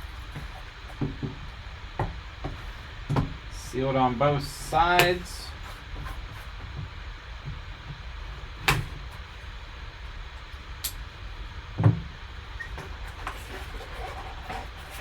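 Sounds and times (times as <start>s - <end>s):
low steady hum: 0.0s - 15.0s
dull knocks: 0.3s - 3.4s, 11.8s - 12.1s.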